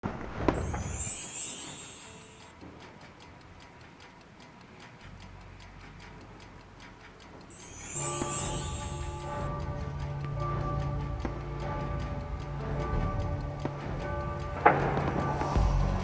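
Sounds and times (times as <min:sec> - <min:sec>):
clock ticking: 0:00.3 - 0:15.8
held music tones: 0:00.5 - 0:03.5, 0:07.5 - 0:16.0
high shimmering swoosh: 0:00.6 - 0:02.5, 0:07.5 - 0:09.6.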